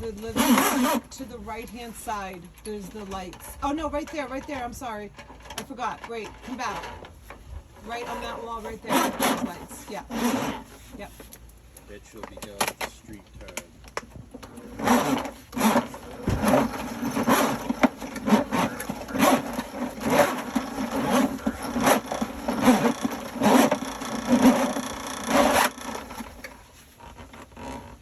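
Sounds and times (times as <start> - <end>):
drain cleaning machine running: 14.4 - 26.6.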